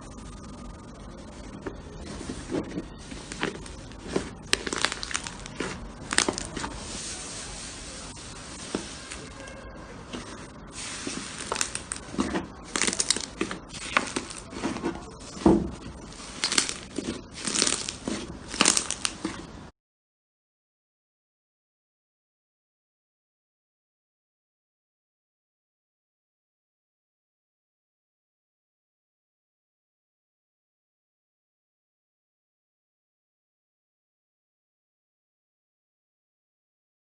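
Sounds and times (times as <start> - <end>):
slime squelching: 2.0 - 19.6.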